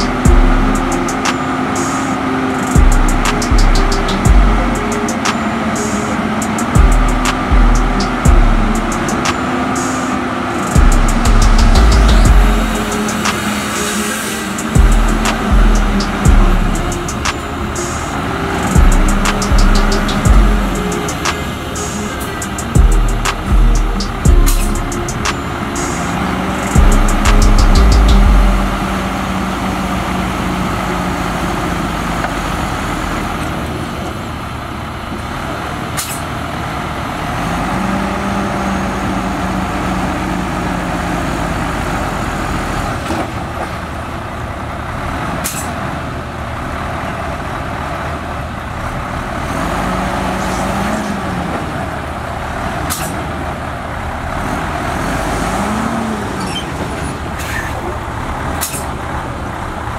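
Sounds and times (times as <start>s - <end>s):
diesel machinery engines running: 0.0s - 59.9s.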